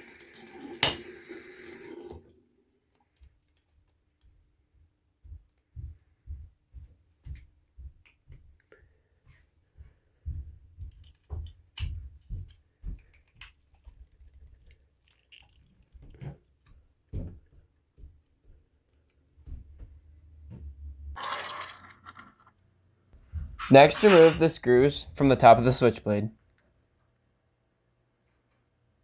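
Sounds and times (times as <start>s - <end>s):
dripping water: 13.1s - 17.1s.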